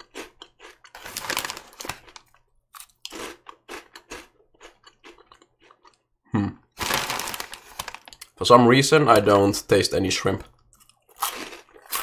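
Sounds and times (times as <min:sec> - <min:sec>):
chewing crisp crackers: 0:00.0 - 0:06.2, 0:10.5 - 0:12.0.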